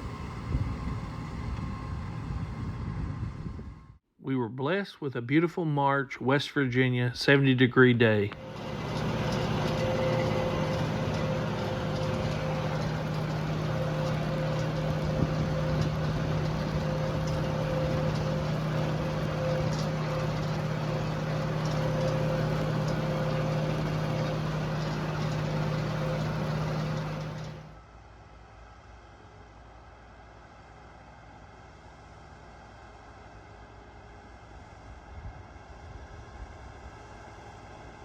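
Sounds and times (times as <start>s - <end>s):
engine humming: 8.3s - 27.8s.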